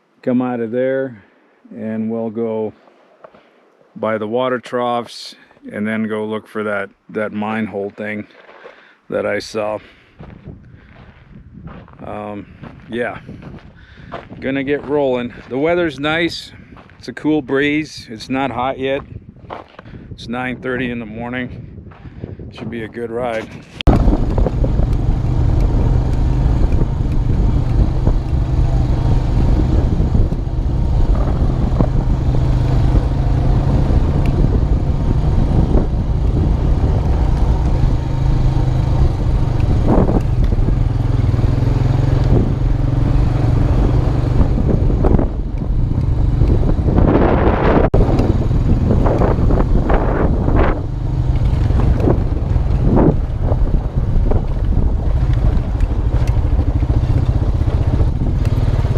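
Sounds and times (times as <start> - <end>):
atv engine running: 23.7 - 58.9.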